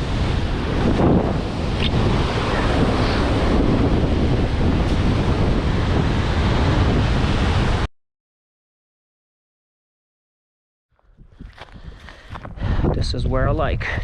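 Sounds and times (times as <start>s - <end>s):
waves washing: 0.0s - 7.9s
wind buffeting microphone: 0.0s - 7.9s, 11.0s - 14.0s.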